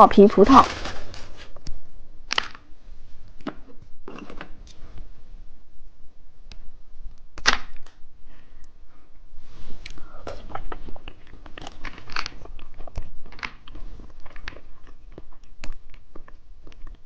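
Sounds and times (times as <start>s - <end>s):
candy crunching while chewed: 9.9s - 17.0s.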